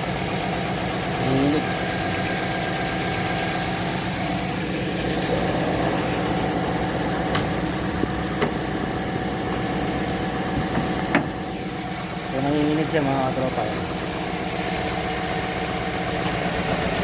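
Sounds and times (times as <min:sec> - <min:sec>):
car engine idling roughly: 0:00.0 - 0:17.0.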